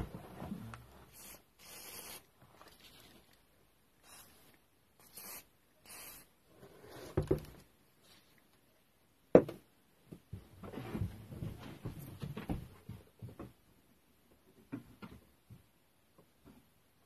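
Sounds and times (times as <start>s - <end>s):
aerosol spray hissing: 1.1s - 2.3s, 4.0s - 6.3s.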